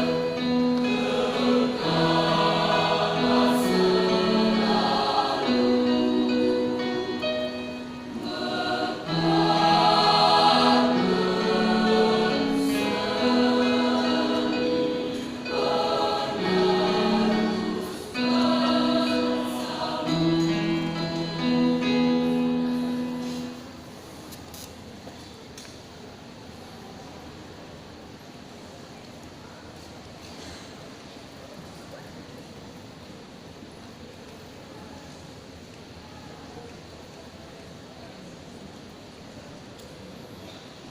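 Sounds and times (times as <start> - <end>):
choir singing: 0.0 - 23.7.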